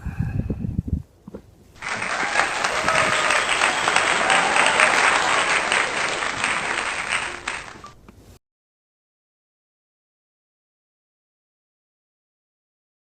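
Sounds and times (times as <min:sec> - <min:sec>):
crowd clapping: 0:01.8 - 0:08.0.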